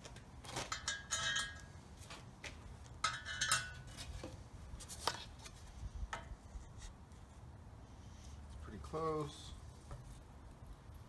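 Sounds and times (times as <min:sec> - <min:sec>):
steel tools clinking on metal: 0:00.7 - 0:01.7, 0:03.0 - 0:03.9.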